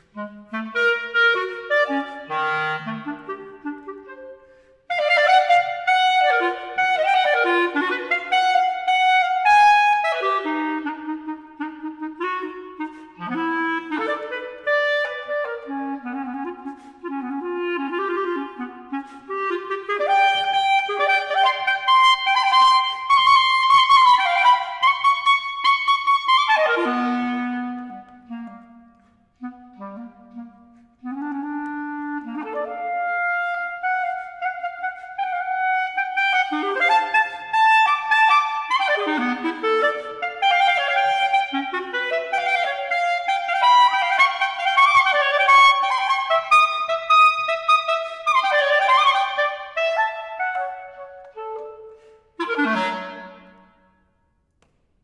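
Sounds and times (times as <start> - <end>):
solo clarinet playing: 0.0 - 54.2.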